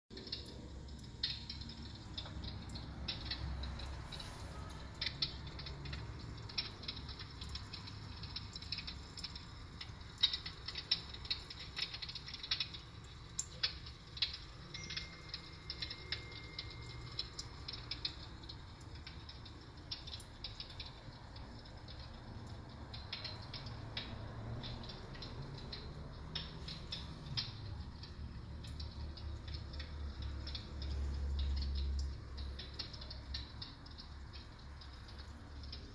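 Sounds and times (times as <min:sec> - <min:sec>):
crackles and pops of burning logs: 0:05.0 - 0:16.6.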